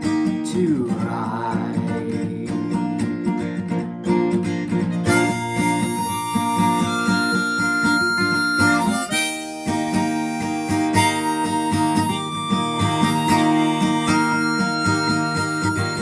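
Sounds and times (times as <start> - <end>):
fingerpicked acoustic guitar: 0.0 - 16.0
harmonica held notes: 5.0 - 16.0.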